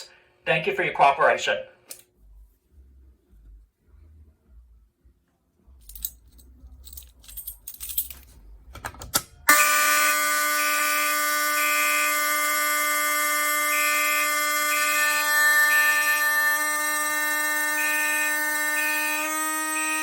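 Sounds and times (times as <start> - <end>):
continuous fire alarm horn: 9.5 - 20.0
pulsing mechanical fire alarm horn: 9.5 - 20.0.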